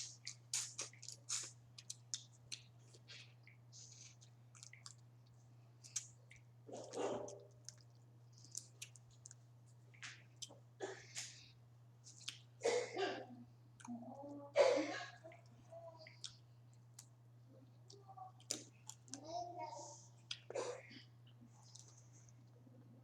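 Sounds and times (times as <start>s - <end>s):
chewing and sucking: 0.0s - 9.4s.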